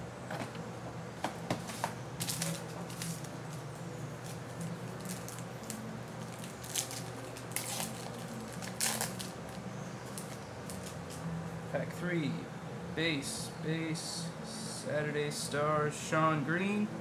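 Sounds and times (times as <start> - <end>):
wrappers crinkling: 2.2 - 11.2.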